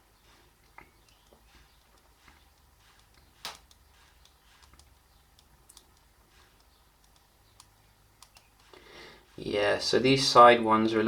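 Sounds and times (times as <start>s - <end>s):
finger tapping fingerprint sensor: 1.0s - 8.8s.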